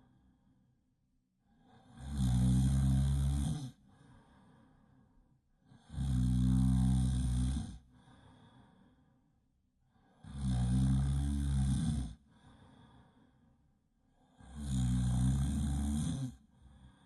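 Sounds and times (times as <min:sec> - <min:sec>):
quiet breathing: 0:00.0 - 0:17.0
person snoring loudly: 0:01.8 - 0:03.8, 0:05.8 - 0:07.8, 0:10.2 - 0:12.2, 0:14.4 - 0:16.4.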